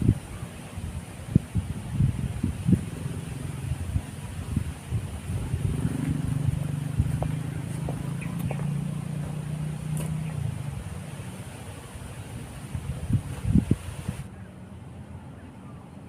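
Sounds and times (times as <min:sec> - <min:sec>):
engine humming passing by: 0:02.6 - 0:12.8.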